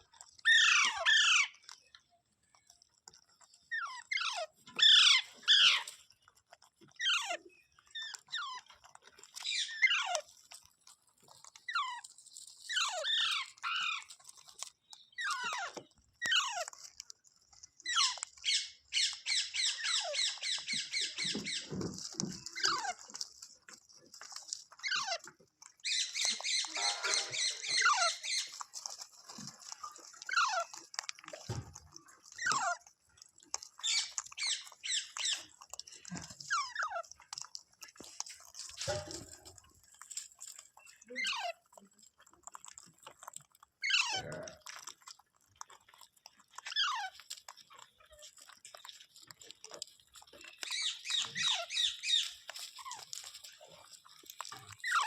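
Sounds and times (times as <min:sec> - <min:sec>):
parrot calling: 0:03.8 - 0:05.9, 0:25.8 - 0:28.5
parrot harsh chattering: 0:03.8 - 0:05.9, 0:25.8 - 0:28.5.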